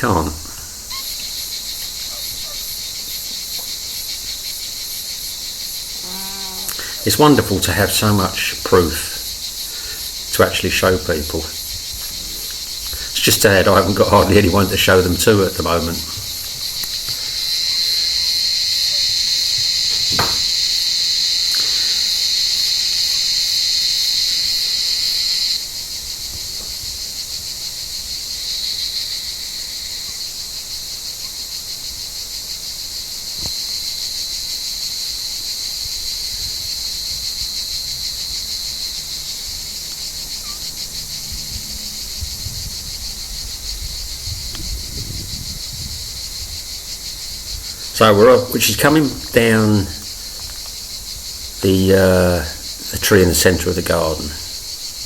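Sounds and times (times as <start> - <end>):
cicadas buzzing: 0.0 - 55.0
faint knock: 19.9 - 20.5.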